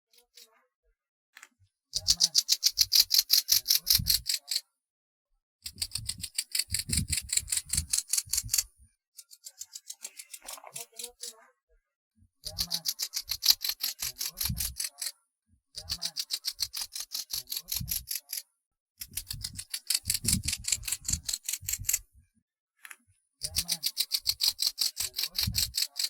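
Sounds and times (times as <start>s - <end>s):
grasshopper stridulating: 2.0s - 4.6s, 5.8s - 8.7s, 12.5s - 15.1s, 15.8s - 18.4s, 19.1s - 22.0s, 23.5s - 26.0s.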